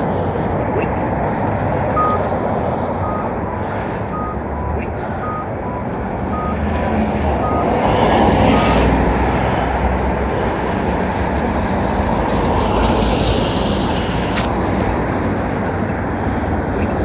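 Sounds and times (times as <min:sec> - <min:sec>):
passing traffic roar: 0:00.0 - 0:17.0
truck reversing beeper: 0:02.0 - 0:02.3, 0:03.0 - 0:09.2.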